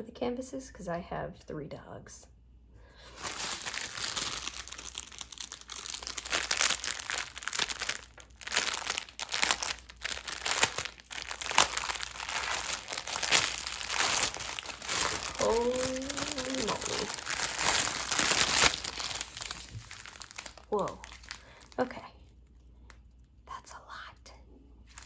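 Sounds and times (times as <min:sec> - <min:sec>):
packaging crinkling and rustling: 0:03.0 - 0:21.9.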